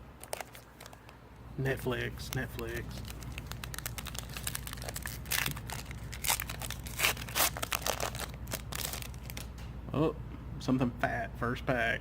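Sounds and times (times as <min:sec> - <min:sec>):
wrapper crinkling and tearing: 0:00.2 - 0:01.1, 0:02.2 - 0:09.6.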